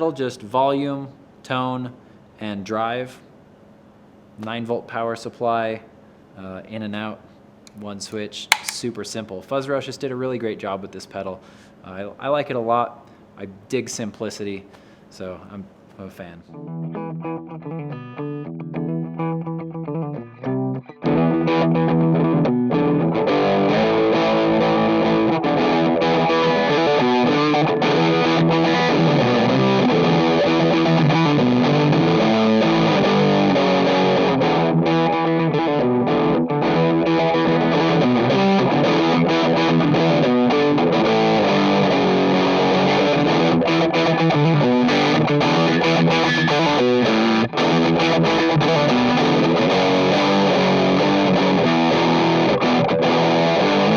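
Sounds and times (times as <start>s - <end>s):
drums playing: 8.5s - 8.8s
distorted electric guitar: 16.5s - 53.9s.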